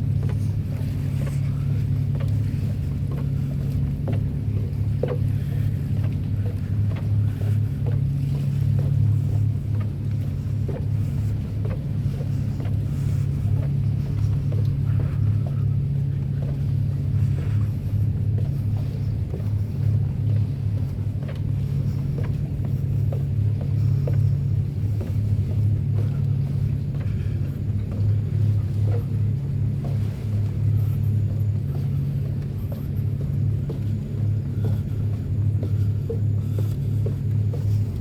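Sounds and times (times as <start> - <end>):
pulsing engine drone: 0.0 - 38.0.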